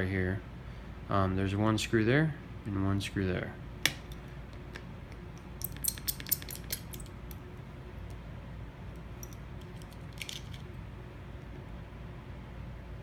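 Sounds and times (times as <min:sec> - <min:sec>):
small metallic clicks: 0:05.6 - 0:07.4, 0:09.2 - 0:10.7.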